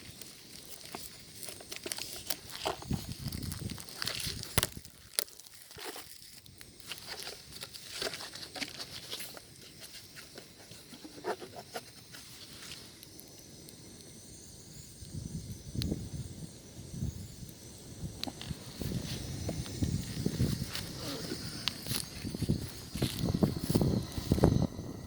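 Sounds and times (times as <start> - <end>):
bonfire crackling and popping: 0.0 - 25.0
low rumbling noise: 15.2 - 25.0.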